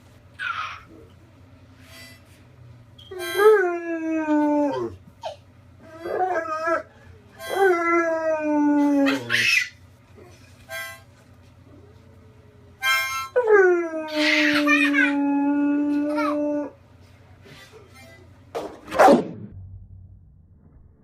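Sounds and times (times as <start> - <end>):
dog howling: 3.4 - 5.0, 7.5 - 9.7, 13.4 - 16.8.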